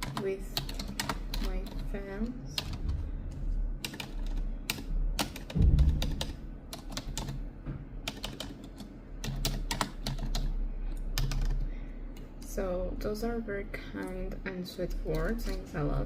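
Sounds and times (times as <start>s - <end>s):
fingernails typing on keyboard: 0.0s - 2.9s, 3.8s - 7.4s, 8.0s - 11.7s, 15.1s - 15.7s.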